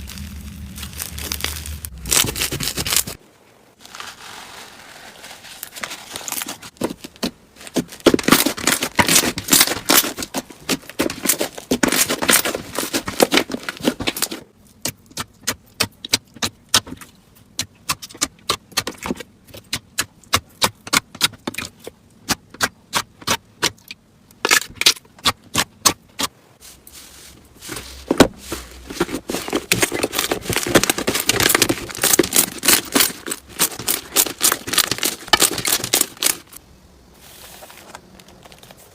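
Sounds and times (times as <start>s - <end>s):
slime crackling and popping: 0.0s - 3.2s.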